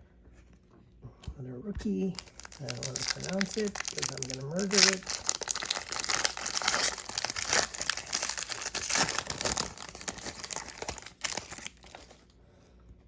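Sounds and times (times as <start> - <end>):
foil wrapper crinkling: 2.0 - 12.3.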